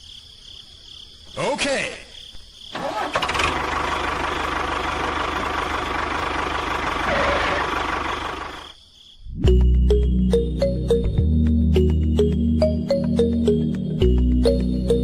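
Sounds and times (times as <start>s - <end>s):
small engine running: 2.8s - 8.8s.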